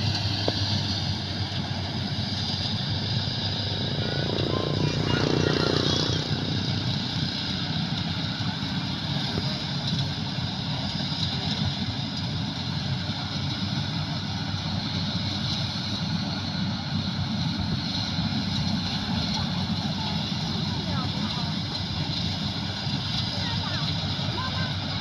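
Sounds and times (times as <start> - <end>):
combine harvester mechanical drone: 0.0 - 25.0.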